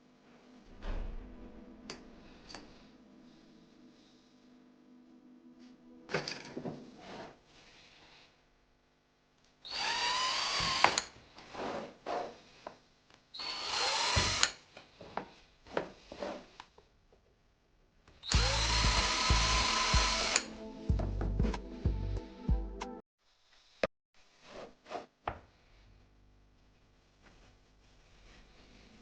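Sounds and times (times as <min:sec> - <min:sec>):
electric screwdriver driving screws: 0:09.7 - 0:11.1, 0:13.4 - 0:14.6, 0:18.2 - 0:20.5.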